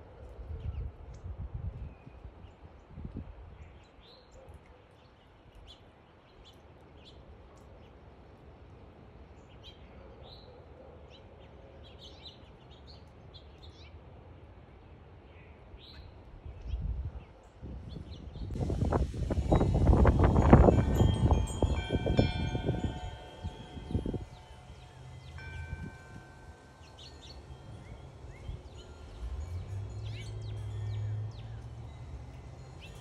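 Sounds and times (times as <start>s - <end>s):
songbirds chirping: 9.2s - 33.0s
low wind gusts: 16.1s - 33.0s
steady low rumble: 18.4s - 33.0s.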